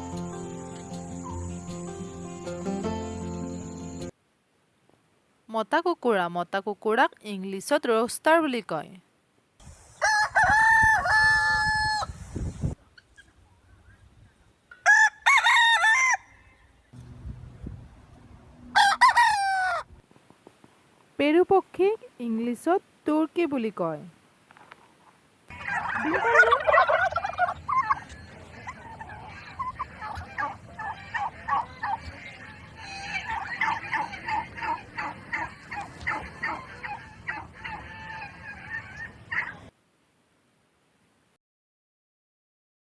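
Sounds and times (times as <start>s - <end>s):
turkey calling: 0.0s - 4.1s, 18.8s - 19.9s, 25.5s - 39.7s
rooster crowing: 10.0s - 12.2s, 14.8s - 16.7s, 18.7s - 19.9s.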